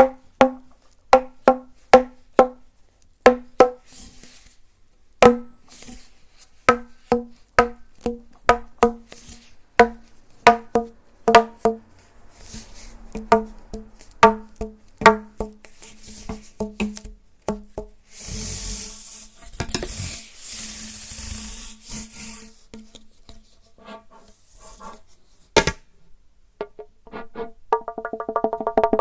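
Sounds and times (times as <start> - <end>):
faint brushing sounds: 3.8 - 4.8, 5.6 - 7.6, 9.0 - 10.5, 11.1 - 15.0, 15.6 - 25.6, 27.1 - 27.6
tapping on hollow object: 5.2 - 5.6, 6.7 - 9.1, 9.8 - 11.9, 13.1 - 17.9, 27.7 - 29.0.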